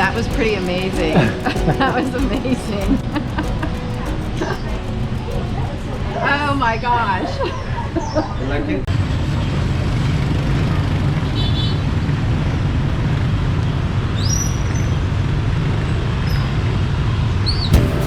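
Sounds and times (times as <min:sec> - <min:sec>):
road traffic rumble: 0:08.9 - 0:14.0.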